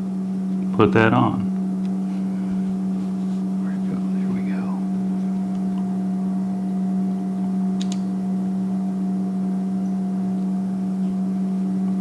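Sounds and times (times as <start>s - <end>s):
steady low hum: 0.0s - 12.0s
light click: 7.8s - 8.1s.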